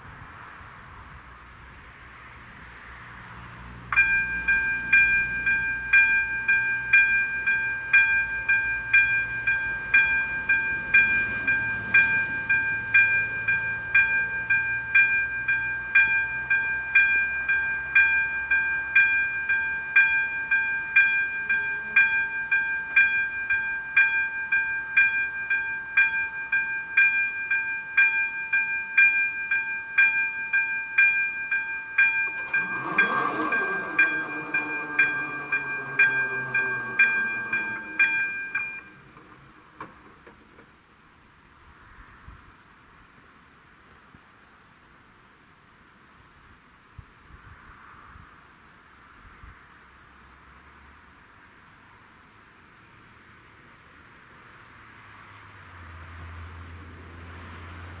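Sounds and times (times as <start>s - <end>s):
level crossing warning bell: 3.8s - 40.1s
train horn: 21.2s - 22.4s, 32.3s - 39.1s.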